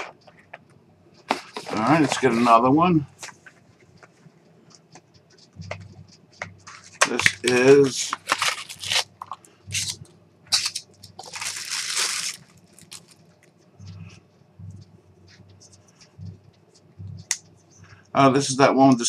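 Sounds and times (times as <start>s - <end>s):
packaging rustling and tearing: 7.0s - 13.5s.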